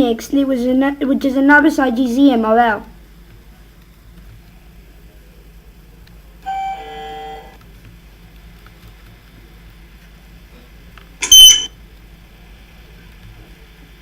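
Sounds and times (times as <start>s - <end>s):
short high-pitched beep: 11.2s - 11.7s.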